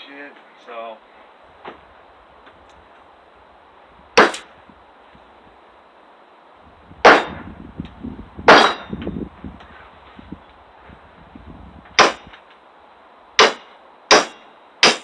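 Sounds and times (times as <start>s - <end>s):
hammer striking metal hatchet: 4.2s - 4.4s, 7.0s - 7.4s, 8.5s - 9.0s, 12.0s - 12.3s, 13.4s - 15.0s.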